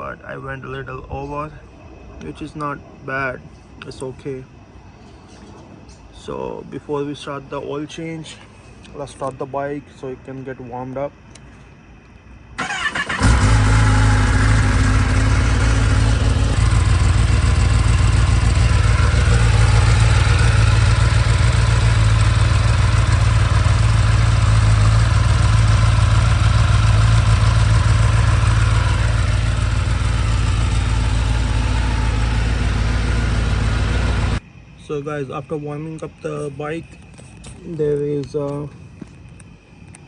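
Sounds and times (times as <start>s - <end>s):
motorcycle engine idling: 13.2s - 34.4s.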